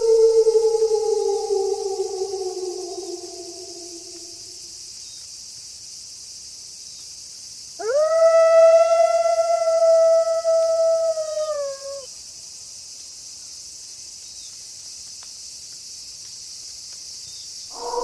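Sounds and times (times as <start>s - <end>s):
wolf howling: 0.0s - 4.6s, 7.8s - 12.1s, 17.7s - 18.0s
crickets chirping: 0.0s - 18.0s.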